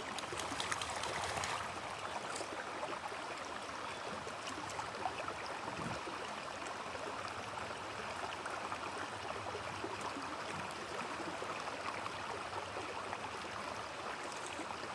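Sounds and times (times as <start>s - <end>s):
small water splashes: 0.0s - 2.9s
stream babbling: 0.0s - 14.9s.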